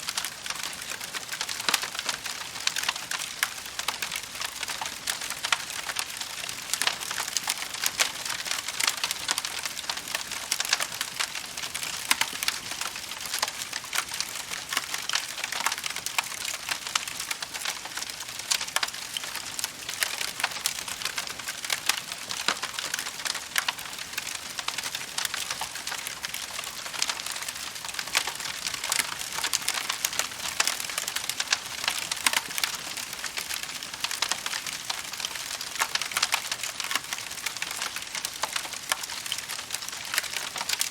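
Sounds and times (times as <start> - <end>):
wood fire crackling: 0.0 - 40.9.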